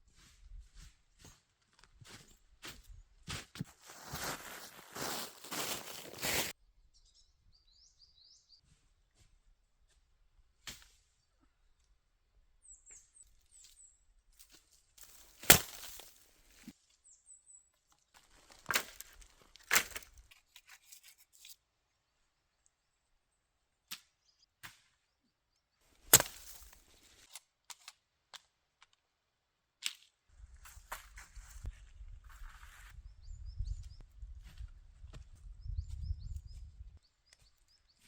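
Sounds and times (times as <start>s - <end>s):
small bird chirping: 6.8s - 8.6s, 32.9s - 34.4s, 35.3s - 38.0s
wood being struck: 26.1s - 26.8s.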